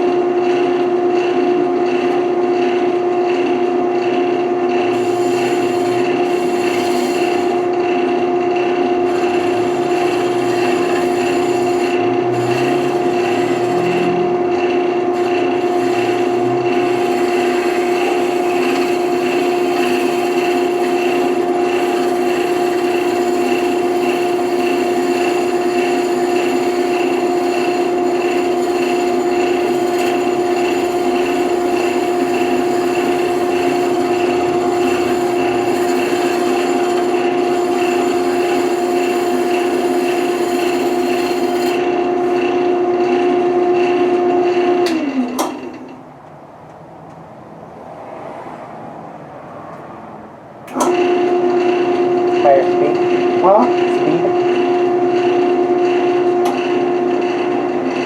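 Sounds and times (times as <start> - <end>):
wood lathe humming: 0.0 - 46.0, 50.7 - 58.0
turning tool scraping wood: 4.7 - 42.6.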